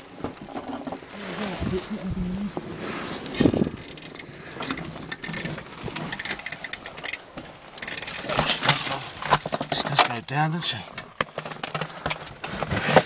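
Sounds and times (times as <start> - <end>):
bricks clicking and scraping: 3.2 - 13.0.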